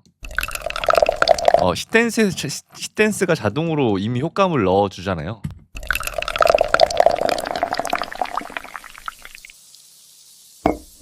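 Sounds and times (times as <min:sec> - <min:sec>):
liquid pouring and splashing: 0:00.2 - 0:01.7, 0:05.8 - 0:11.0.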